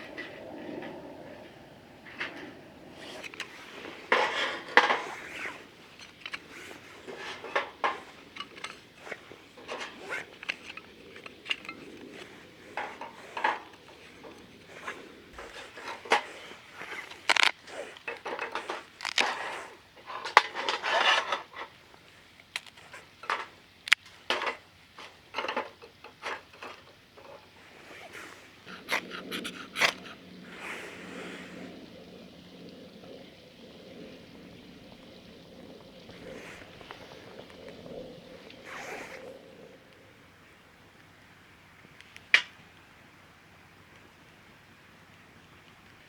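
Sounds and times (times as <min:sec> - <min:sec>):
cookware scraping: 0:02.3 - 0:21.6.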